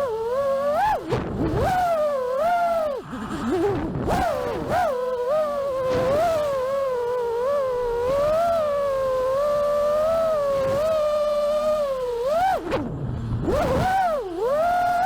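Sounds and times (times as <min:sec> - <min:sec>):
drone motors whining: 0:00.0 - 0:15.0.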